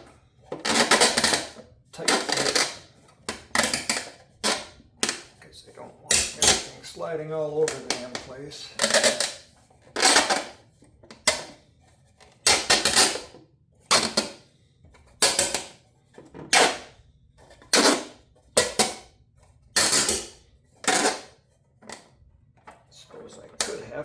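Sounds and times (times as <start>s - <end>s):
plastic parts scraping: 0.0s - 14.4s, 19.8s - 24.0s.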